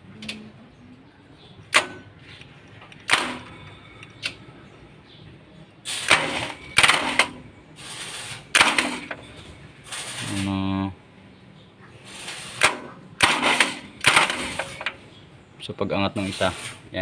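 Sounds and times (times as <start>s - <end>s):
diesel starter cranking bursts: 5.9s - 10.5s, 12.0s - 15.1s, 16.1s - 17.0s.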